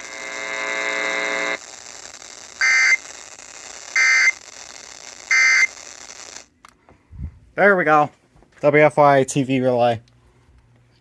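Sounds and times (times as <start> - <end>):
buzzy steady tone: 0.0 - 6.5
screechy two-tone digital bursts: 2.3 - 6.5.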